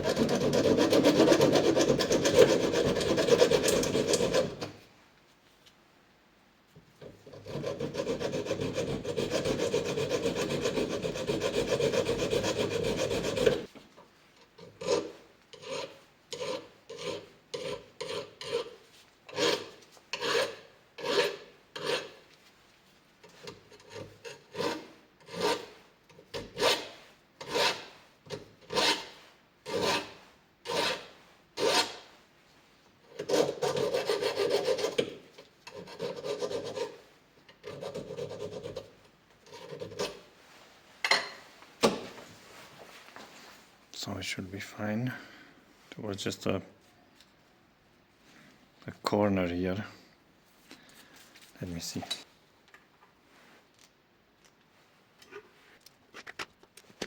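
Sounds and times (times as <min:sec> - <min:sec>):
metal grinding: 0:00.0 - 0:04.7
rasping strokes: 0:00.0 - 0:04.8, 0:07.3 - 0:13.7.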